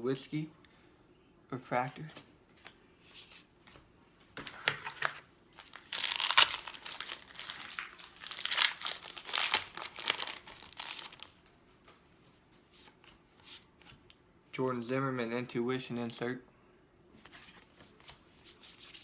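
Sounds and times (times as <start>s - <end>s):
foil wrapper crinkling: 4.8s - 11.4s.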